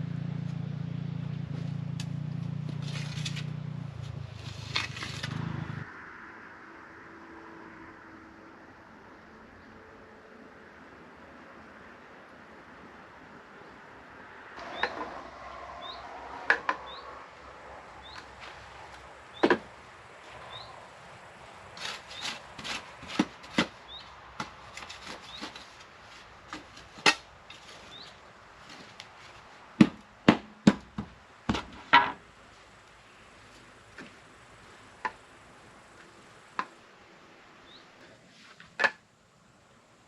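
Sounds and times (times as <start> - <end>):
wood rubbing and scraping: 2.6 - 5.6, 18.0 - 30.0.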